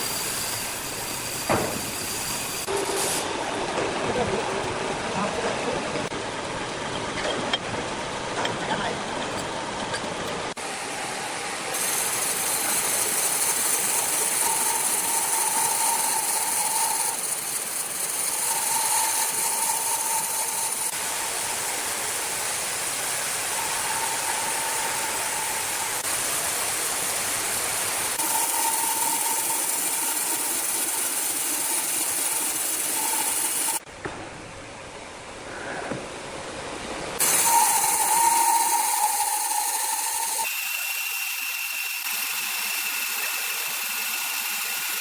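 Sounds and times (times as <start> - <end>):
saw whining: 0.0 - 3.5, 10.6 - 33.9, 37.2 - 45.0
sawmill machinery running: 0.0 - 6.2, 10.5 - 33.9, 37.2 - 45.0.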